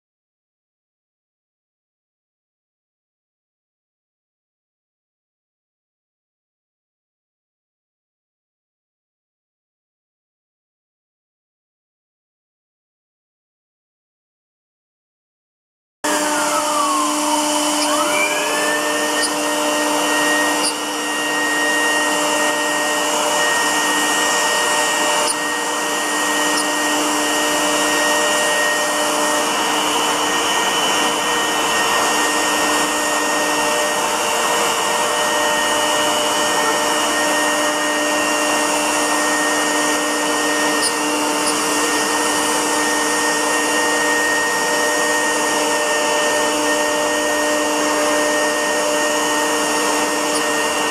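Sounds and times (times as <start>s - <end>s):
router spindle whining while cutting: 16.1s - 50.9s.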